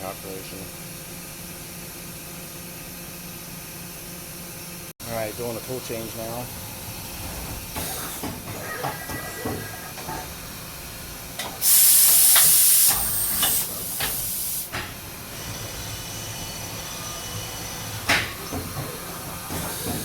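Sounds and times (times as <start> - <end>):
compressed air hiss: 11.5 - 14.8.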